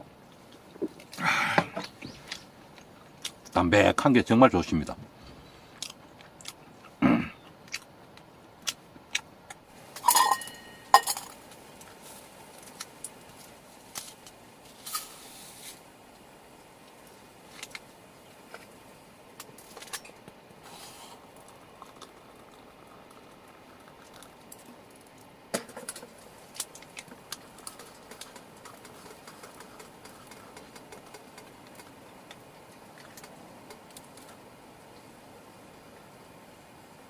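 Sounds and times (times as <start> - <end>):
tableware clinking: 10.0 - 11.4.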